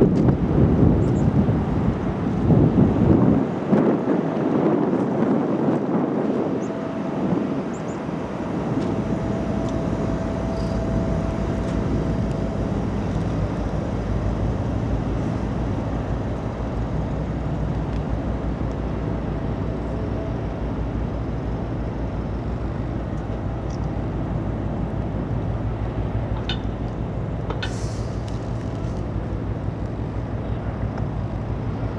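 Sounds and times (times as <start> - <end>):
ship engine drone: 0.0 - 31.9.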